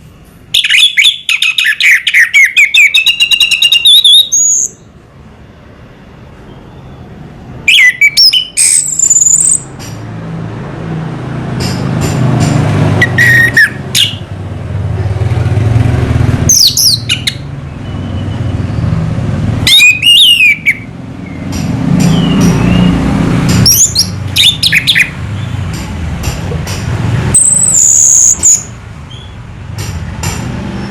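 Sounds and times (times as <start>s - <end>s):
bird whistled song: 0.6s - 4.9s, 6.5s - 7.1s, 7.7s - 9.7s, 13.0s - 14.3s, 16.5s - 19.0s, 19.7s - 23.0s, 23.6s - 25.5s, 27.4s - 29.4s.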